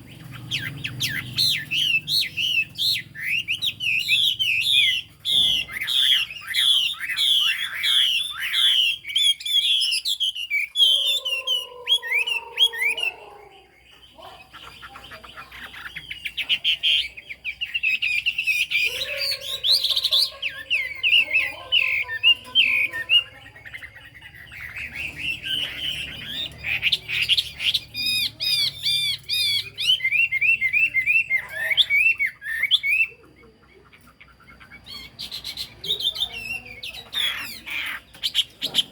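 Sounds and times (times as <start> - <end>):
bird singing whistled notes: 0.0 - 15.0, 15.6 - 33.3.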